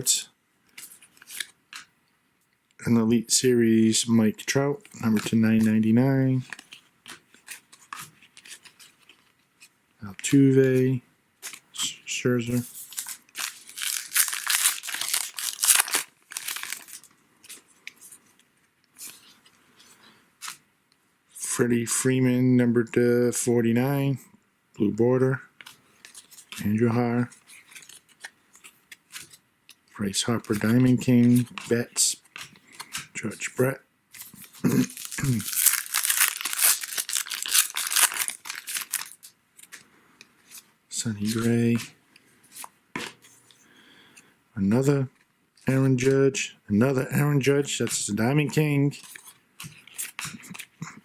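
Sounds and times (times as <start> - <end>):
cards being handled: 5.0 - 10.8, 11.4 - 20.6, 25.6 - 43.6, 47.8 - 51.0
wrapper crinkling and tearing: 12.8 - 17.6, 34.1 - 39.8.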